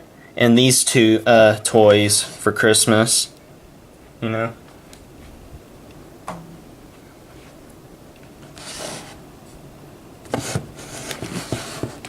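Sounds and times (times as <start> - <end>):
plastic toy rubbing scrape: 8.5 - 9.2, 10.3 - 12.0.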